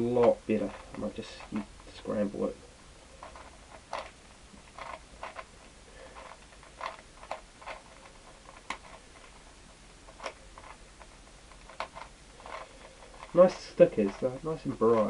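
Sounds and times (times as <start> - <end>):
plastic puzzle clicks: 3.2 - 9.4, 10.1 - 15.0.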